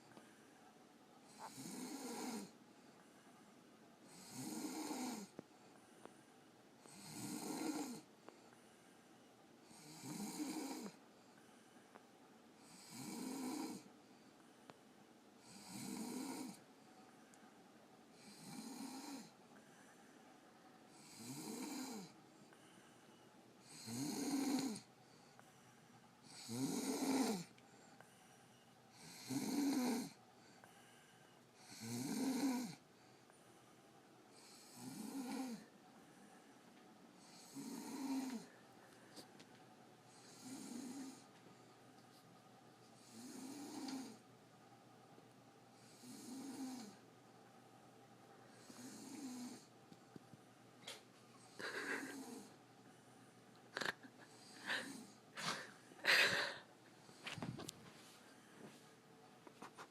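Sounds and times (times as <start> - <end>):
woman snoring: 1.3 - 2.6, 4.1 - 5.4, 6.8 - 8.1, 9.6 - 11.0, 12.6 - 13.9, 15.4 - 16.6, 18.2 - 19.4, 20.9 - 22.2, 23.6 - 24.9, 26.3 - 27.6, 29.0 - 30.2, 31.6 - 32.8, 34.3 - 35.7, 37.2 - 38.5, 40.1 - 41.2, 43.0 - 44.2, 45.8 - 47.0, 48.6 - 49.7, 51.5 - 52.6, 53.7 - 56.7.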